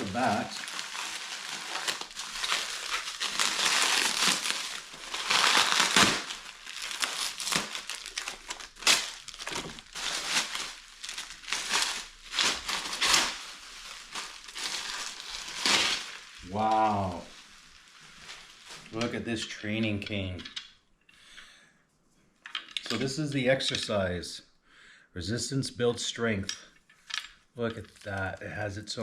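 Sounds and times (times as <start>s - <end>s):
packaging crinkling and rustling: 0.0s - 19.3s.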